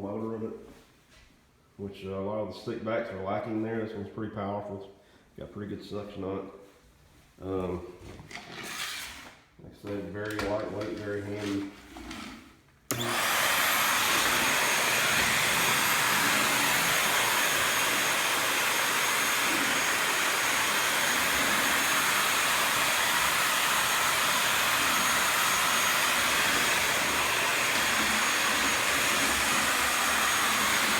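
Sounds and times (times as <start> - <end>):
stick vacuum running: 12.9 - 30.9.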